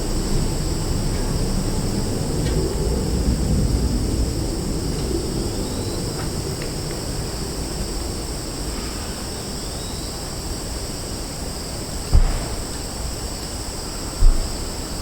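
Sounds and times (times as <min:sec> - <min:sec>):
passing vehicle rumble: 0:00.0 - 0:08.6
insects chorus: 0:00.0 - 0:15.0
low thump: 0:12.1 - 0:12.8.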